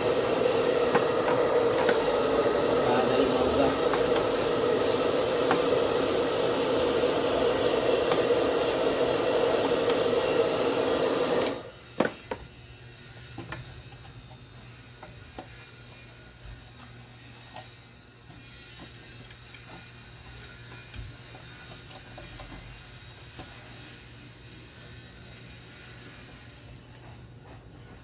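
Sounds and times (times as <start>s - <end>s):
electric air blower running: 0.0s - 17.2s.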